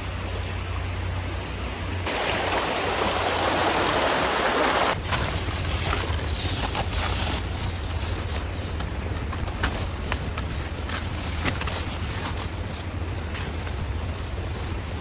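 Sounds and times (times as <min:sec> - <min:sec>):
rain falling: 0:02.1 - 0:07.4.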